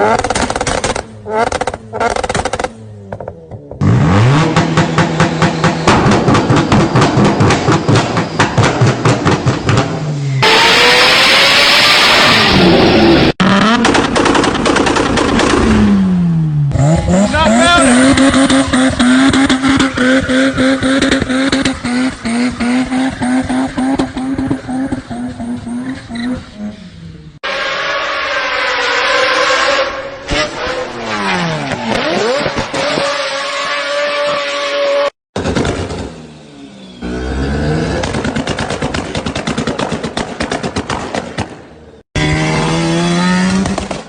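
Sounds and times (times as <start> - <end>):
exhaust pops and bangs: 0.0 - 10.1, 13.5 - 16.0, 35.3 - 36.1, 38.0 - 41.7, 43.5 - 44.0
rotary engine at high revs: 0.0 - 16.1, 16.7 - 26.8, 30.3 - 40.1, 42.2 - 44.0.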